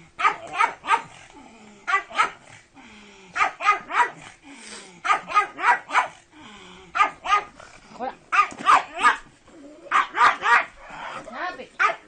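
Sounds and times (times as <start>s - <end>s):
dog barking: 0.2s - 1.2s, 1.9s - 2.4s, 3.4s - 4.2s, 5.0s - 6.2s, 7.0s - 7.5s, 8.3s - 9.3s, 9.9s - 10.8s, 11.8s - 12.0s.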